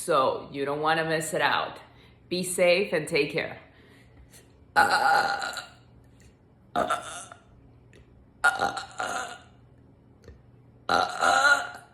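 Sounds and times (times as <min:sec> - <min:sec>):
woman burping: 0:04.8 - 0:05.8, 0:06.7 - 0:07.5, 0:08.4 - 0:09.6, 0:10.9 - 0:11.9.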